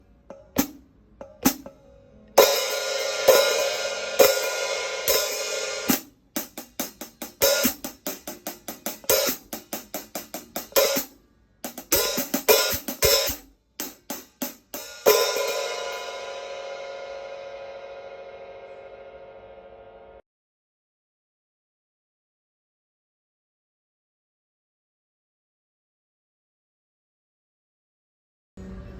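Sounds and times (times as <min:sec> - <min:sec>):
hi-hat cymbals struck with stick: 0:02.4 - 0:19.3.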